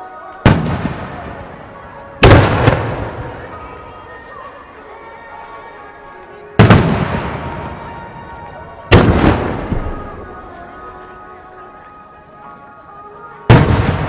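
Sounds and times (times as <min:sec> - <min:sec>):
show music: 0:00.0 - 0:14.0
firework shells bursting: 0:00.4 - 0:04.3.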